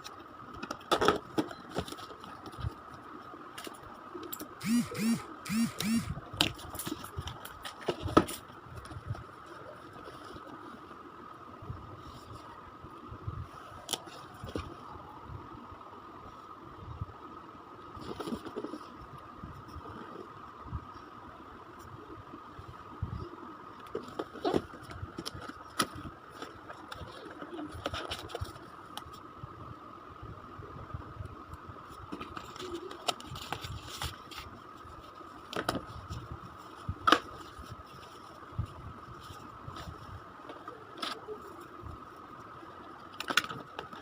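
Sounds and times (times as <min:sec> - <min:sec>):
thin high hum: 0:04.6 - 0:06.4.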